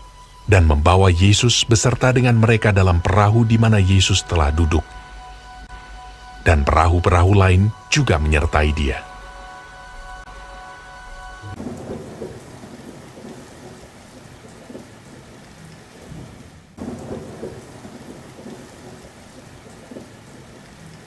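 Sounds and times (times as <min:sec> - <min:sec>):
heavy rain: 0:11.5 - 0:21.0
thunder rumbling: 0:11.5 - 0:21.0.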